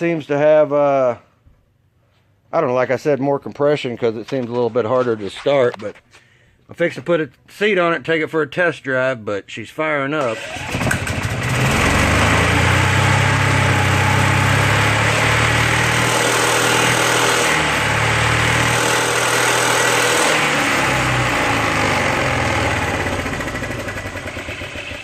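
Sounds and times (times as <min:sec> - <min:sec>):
golf cart engine running: 0:10.4 - 0:25.0.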